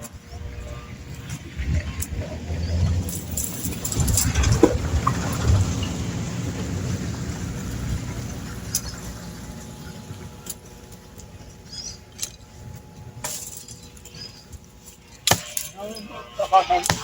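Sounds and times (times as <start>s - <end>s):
blade chopping wood: 15.3s - 15.6s.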